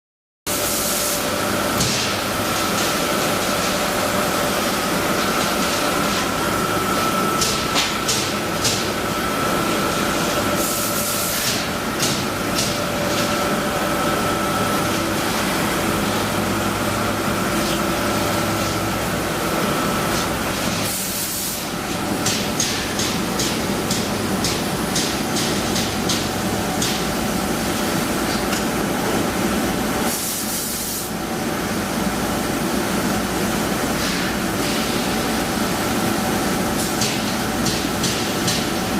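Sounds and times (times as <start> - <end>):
laser cutting machine humming: 0.5 - 38.9.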